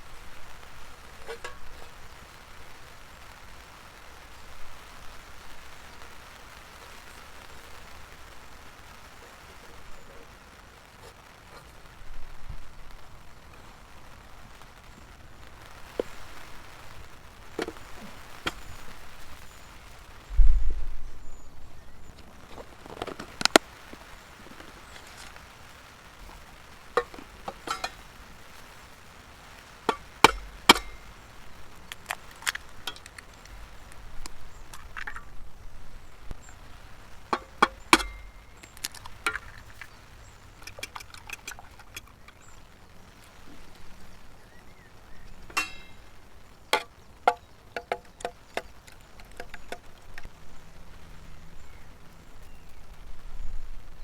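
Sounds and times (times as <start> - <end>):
utensils and cookware clinking: 1.2 - 2.1, 27.0 - 28.1, 29.9 - 31.1, 45.5 - 46.1.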